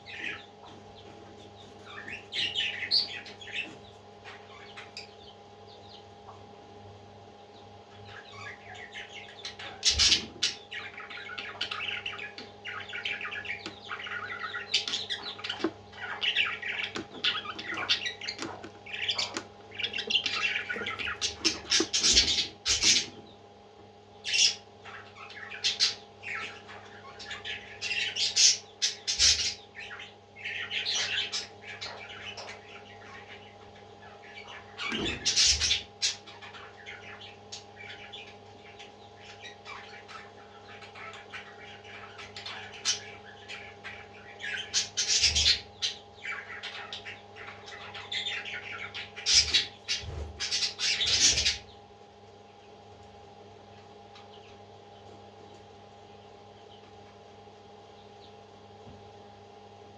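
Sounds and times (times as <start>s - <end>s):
baby parrots squawking: 0.0s - 6.0s, 7.9s - 23.3s, 24.2s - 51.8s
steady low hum: 0.0s - 59.9s.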